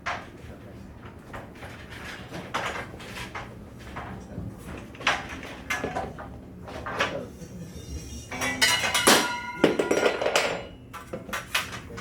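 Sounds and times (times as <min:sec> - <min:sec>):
aluminum frames knocking and clanking: 0:08.3 - 0:11.9.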